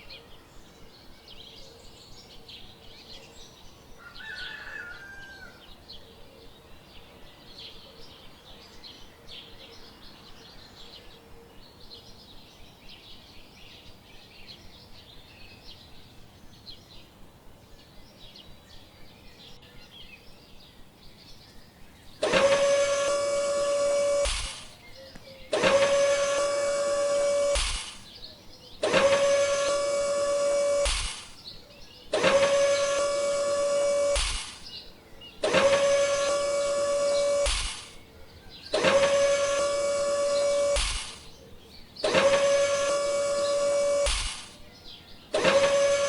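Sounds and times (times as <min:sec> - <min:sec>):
faint rapid chirping: 0:22.0 - 0:46.0
small electric motor whine: 0:22.2 - 0:28.2, 0:28.8 - 0:34.8, 0:35.4 - 0:41.4, 0:42.0 - 0:46.0.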